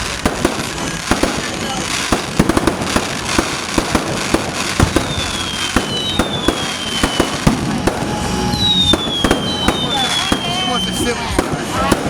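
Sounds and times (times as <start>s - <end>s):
fireworks bangs and crackle: 0.0s - 12.0s
high descending whistles: 4.9s - 11.2s.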